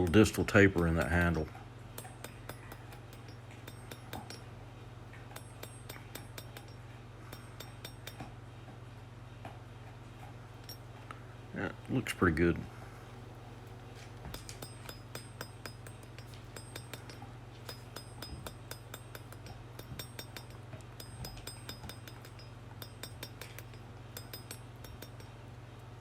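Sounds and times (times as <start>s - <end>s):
steady low hum: 0.0s - 26.0s
hammer striking steel on anvil: 2.0s - 4.5s, 5.4s - 8.3s, 14.3s - 25.3s.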